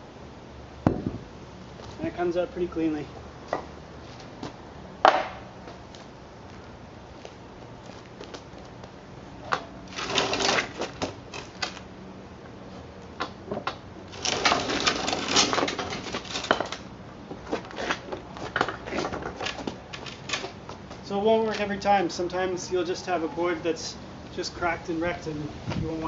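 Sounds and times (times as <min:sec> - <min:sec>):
wooden boards knocking and clattering: 0:05.1 - 0:05.4, 0:10.0 - 0:11.8, 0:13.2 - 0:16.8, 0:17.5 - 0:20.5.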